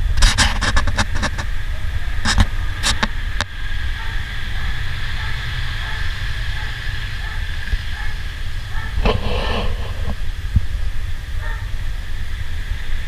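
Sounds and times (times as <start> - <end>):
low mechanical rumble: 0.0 - 12.2
sharp clicks and knocks: 0.2 - 1.5, 2.2 - 3.2.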